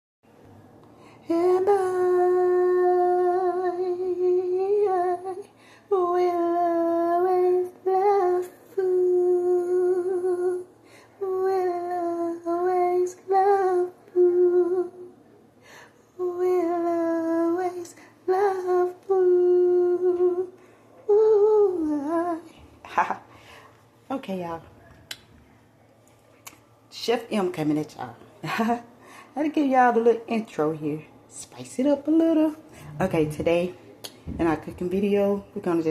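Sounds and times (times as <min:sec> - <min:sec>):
woman humming a slow tune: 0:32.8 - 0:33.7.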